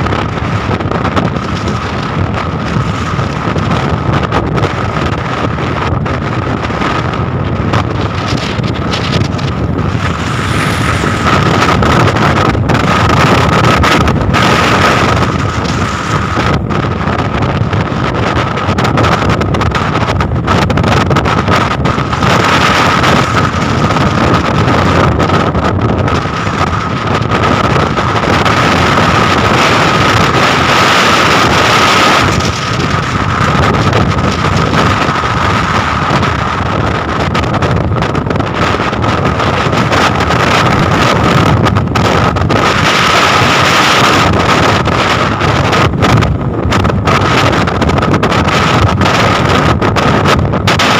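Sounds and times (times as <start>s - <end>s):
boat engine noise: 0.0s - 50.9s
storm wind buffeting microphone: 0.0s - 50.9s
sea waves: 8.2s - 13.2s.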